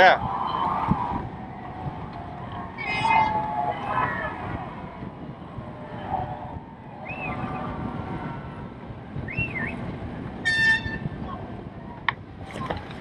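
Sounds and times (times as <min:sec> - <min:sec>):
water noise: 0:00.0 - 0:13.0
wind: 0:00.0 - 0:13.0
horn toot: 0:10.4 - 0:11.2.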